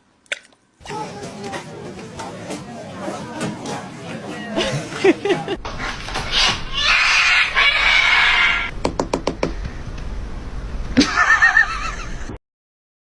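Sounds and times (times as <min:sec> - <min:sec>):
high-pitched animal call: 0:06.2 - 0:08.7
knocks: 0:08.8 - 0:09.7.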